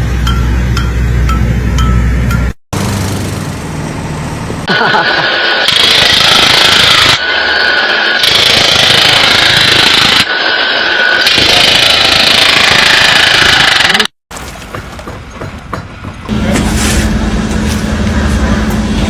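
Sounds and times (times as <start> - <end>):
harsh power tool noise: 4.7 - 14.2.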